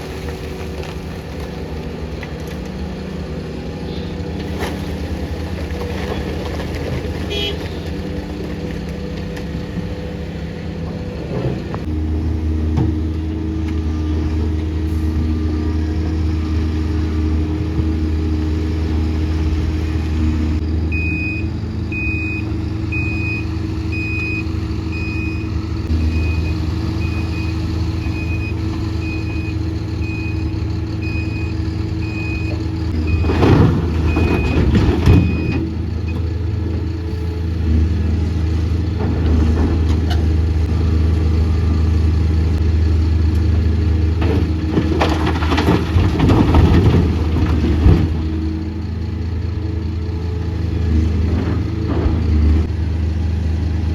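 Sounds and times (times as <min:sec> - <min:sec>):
heavy diesel engine running: 0:00.0 - 0:53.9
reversing alarm beeping: 0:20.9 - 0:33.4, 0:34.0 - 0:36.2.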